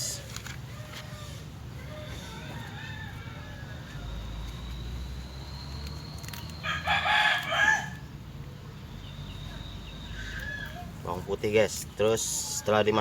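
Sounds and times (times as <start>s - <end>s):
rooster crowing: 0.7s - 4.3s, 6.6s - 8.0s.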